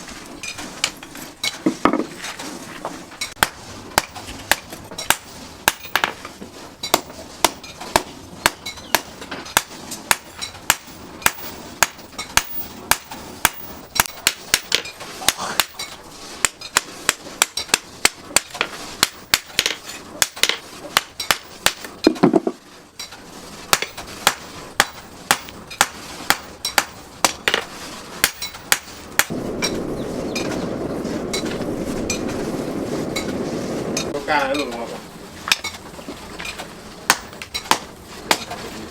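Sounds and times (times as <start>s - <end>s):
steady hissing: 0.0s - 38.9s
hammer striking steel on anvil: 3.4s - 6.2s, 6.8s - 22.2s, 23.7s - 27.6s.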